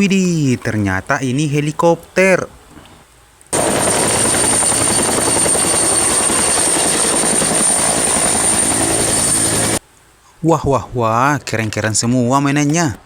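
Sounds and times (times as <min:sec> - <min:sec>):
helicopter rotor and engine: 0:03.5 - 0:09.8.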